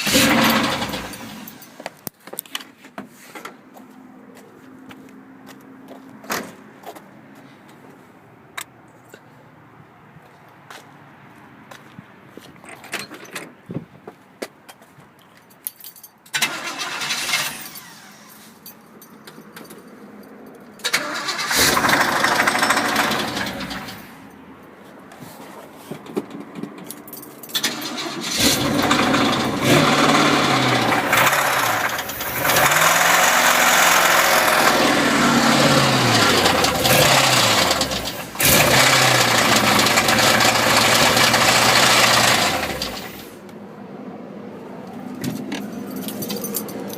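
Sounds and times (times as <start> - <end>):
engine running and revving: 0.0 - 1.8, 21.4 - 24.2, 27.7 - 43.4
engine cranking: 0.0 - 2.1, 16.3 - 18.3, 20.8 - 24.2, 26.2 - 43.2.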